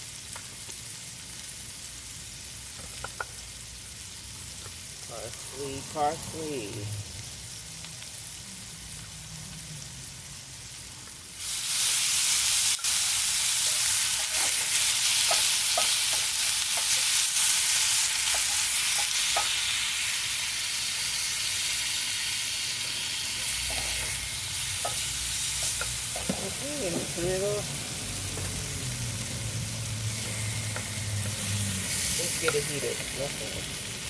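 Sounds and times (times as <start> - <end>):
food sizzling in a pan: 0.0 - 34.0.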